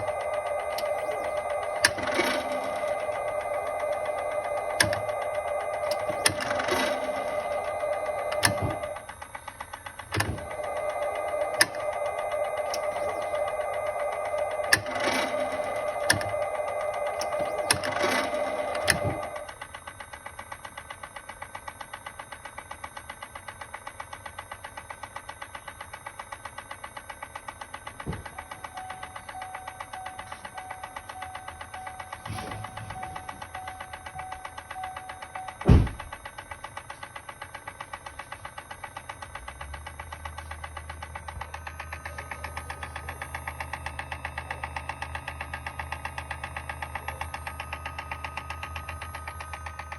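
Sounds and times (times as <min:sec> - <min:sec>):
fast regular clicking: 0:00.0 - 0:19.6
steady hum: 0:00.0 - 0:20.0, 0:28.2 - 0:49.9.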